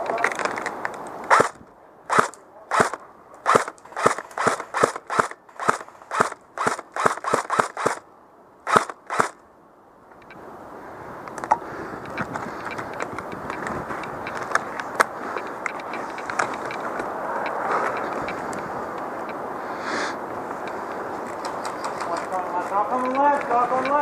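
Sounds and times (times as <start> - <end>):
steady noise: 0.0 - 24.0
airsoft gun shots: 1.3 - 8.0, 8.7 - 9.4.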